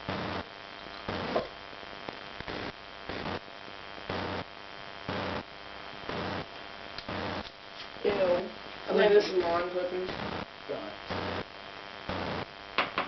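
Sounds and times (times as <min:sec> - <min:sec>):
electrical hum and hiss: 0:00.0 - 0:13.0.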